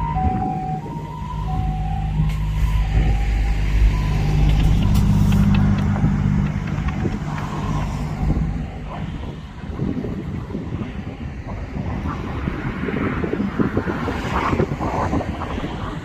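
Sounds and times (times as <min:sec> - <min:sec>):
ambulance two-tone siren: 0:00.0 - 0:06.4
vehicle engine running: 0:01.2 - 0:09.9.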